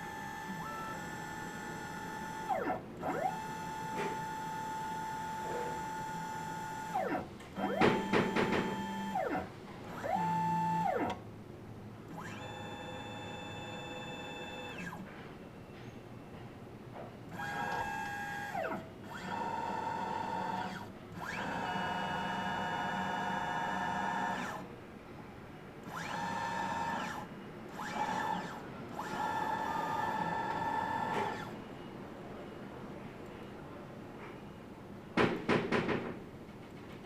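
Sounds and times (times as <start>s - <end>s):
electric motor whining: 0.0s - 9.4s.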